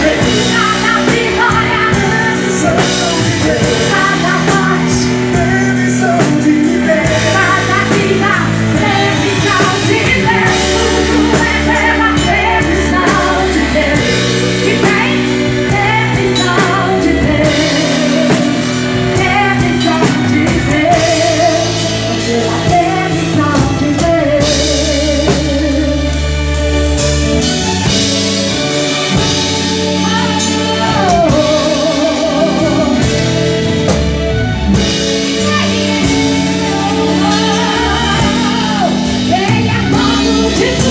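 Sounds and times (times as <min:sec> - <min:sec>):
woman singing: 0:00.0 - 0:26.4, 0:29.1 - 0:33.7, 0:34.7 - 0:40.9
gospel band playing: 0:00.0 - 0:40.9.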